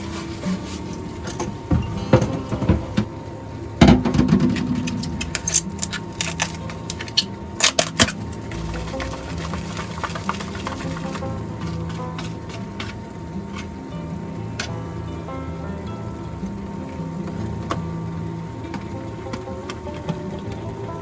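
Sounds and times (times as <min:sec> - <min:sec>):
utensils and dishes clinking: 0:00.0 - 0:03.1, 0:03.8 - 0:13.9
soft background music: 0:00.0 - 0:21.0.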